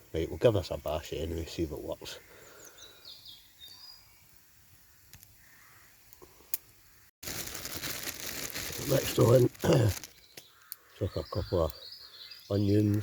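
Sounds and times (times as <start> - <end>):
high bird chirps: 2.3 - 4.3, 10.0 - 13.0.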